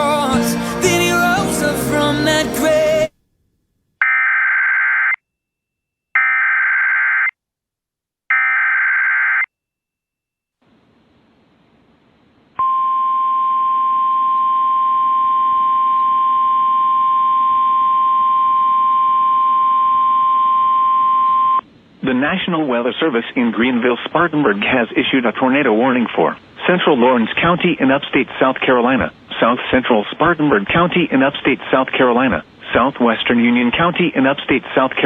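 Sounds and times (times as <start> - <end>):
faint hiss: 21.6 - 35.0.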